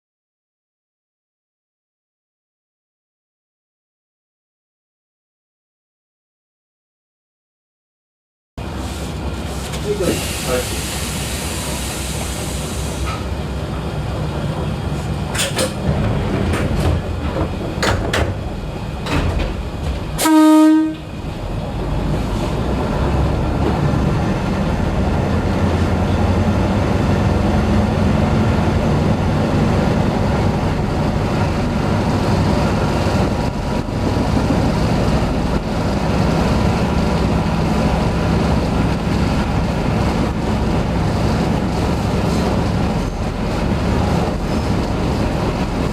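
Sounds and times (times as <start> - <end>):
train engine and wheels on rails: 8.6 - 45.9
train horn blast: 20.2 - 21.1.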